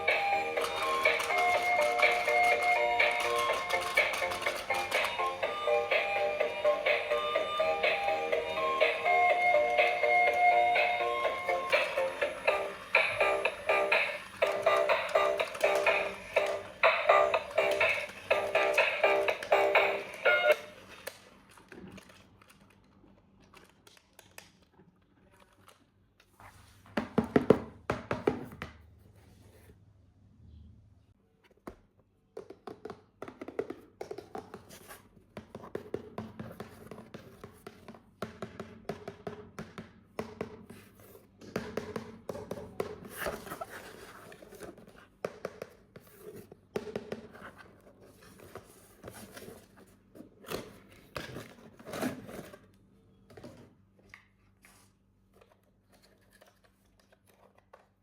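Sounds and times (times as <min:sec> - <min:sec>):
toy parts tapping and thunking: 0:00.0 - 0:05.4, 0:08.4 - 0:20.8.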